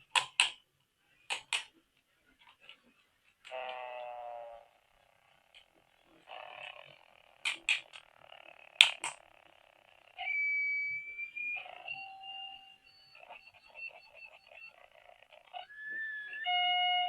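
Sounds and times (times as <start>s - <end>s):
plastic clicks: 0.1s - 0.6s, 1.3s - 1.8s, 7.4s - 8.1s, 8.8s - 9.3s
toy electronic beeping: 3.5s - 4.8s, 6.2s - 17.0s.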